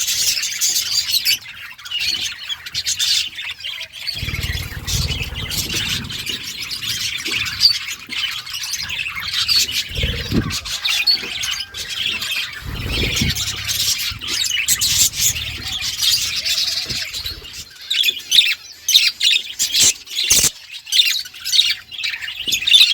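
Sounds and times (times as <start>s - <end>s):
budgerigars chattering and warbling: 0.0s - 22.9s
low rumbles: 4.2s - 17.8s.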